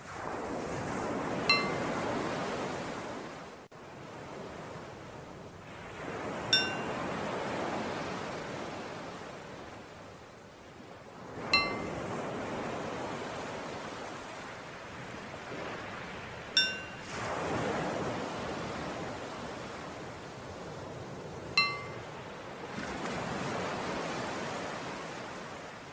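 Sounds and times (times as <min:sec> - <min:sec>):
ocean waves washing: 0:00.0 - 0:25.9
small bell ringing: 0:01.5 - 0:01.8, 0:06.5 - 0:06.9, 0:11.6 - 0:11.9, 0:16.6 - 0:17.0, 0:21.6 - 0:22.0.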